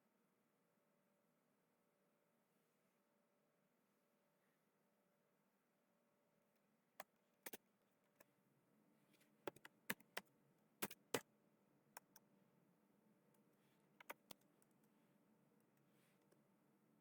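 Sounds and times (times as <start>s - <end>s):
computer keyboard keystrokes: 9.4s - 11.2s, 14.0s - 14.8s.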